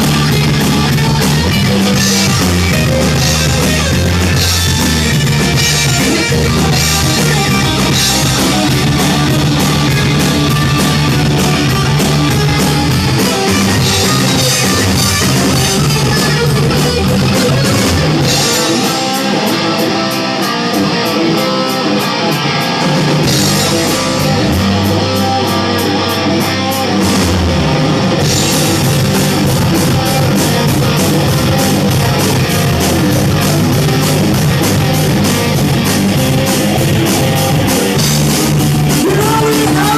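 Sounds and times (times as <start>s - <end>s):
bass guitar: 0.0s - 39.9s
drums: 0.0s - 39.9s
electric guitar: 0.0s - 39.9s.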